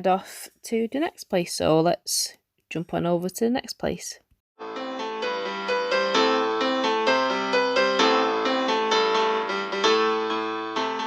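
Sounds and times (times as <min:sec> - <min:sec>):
keyboard playing a quick run: 0:04.6 - 0:11.0.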